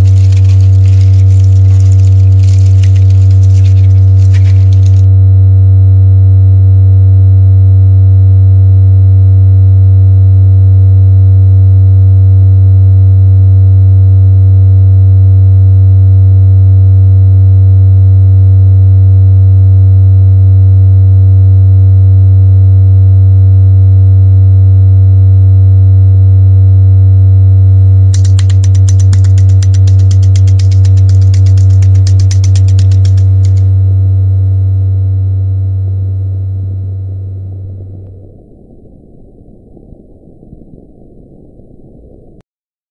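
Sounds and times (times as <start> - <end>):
crackling fizzing noise: 0.0 - 5.1, 27.8 - 33.8, 37.8 - 42.4
low electronic drone tone: 0.0 - 39.8.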